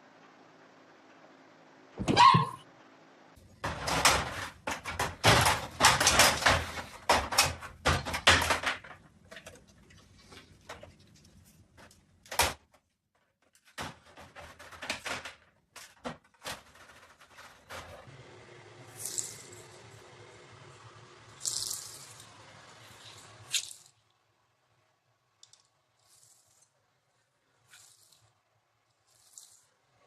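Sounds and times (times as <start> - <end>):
door rattling and banging: 3.6 - 9.3, 13.7 - 18.1.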